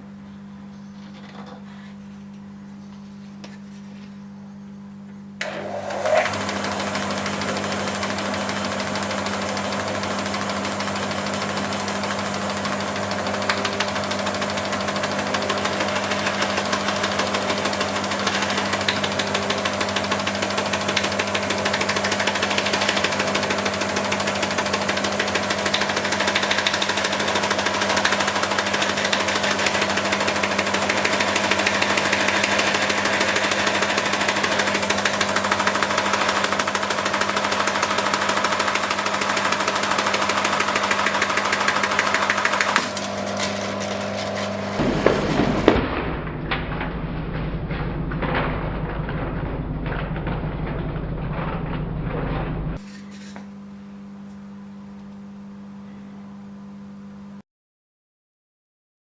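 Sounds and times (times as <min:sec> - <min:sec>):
band saw running: 0:05.4 - 0:41.0, 0:44.8 - 0:45.8.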